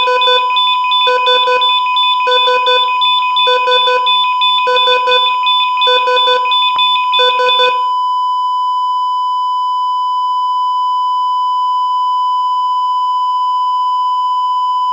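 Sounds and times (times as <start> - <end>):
heart monitor beeps: 0.0 - 14.9
heart monitor flatline tone: 0.0 - 14.9.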